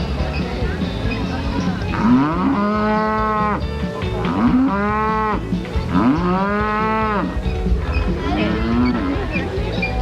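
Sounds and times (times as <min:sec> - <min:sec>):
cow mooing: 0:01.9 - 0:07.4, 0:08.3 - 0:09.4.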